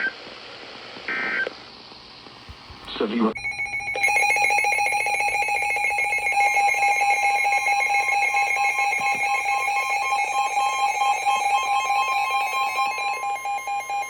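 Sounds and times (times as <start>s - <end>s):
two-tone alarm signal: 3.4s - 14.0s.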